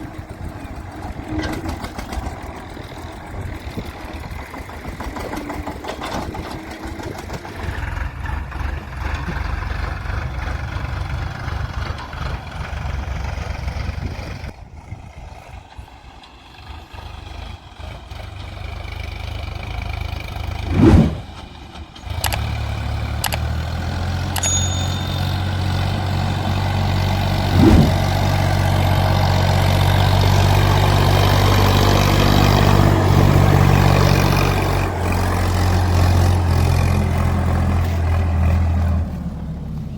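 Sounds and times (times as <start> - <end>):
heavy diesel engine running: 0.0 - 39.9
loud bumps: 20.6 - 21.5, 27.2 - 28.4.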